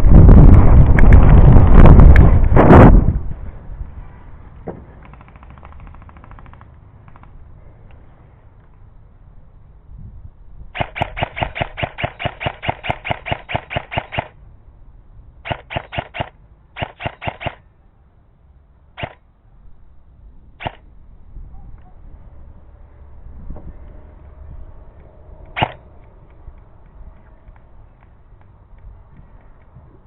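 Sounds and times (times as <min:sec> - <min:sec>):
airsoft gun shots: 0:10.8 - 0:14.4, 0:15.4 - 0:17.6, 0:19.0 - 0:19.2, 0:20.6 - 0:20.8, 0:25.6 - 0:25.8.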